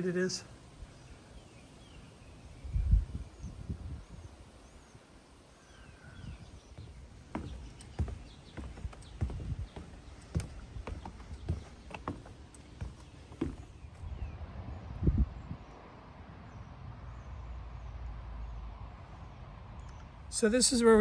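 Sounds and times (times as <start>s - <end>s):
irregular knocks and thumps: 6.8s - 13.8s.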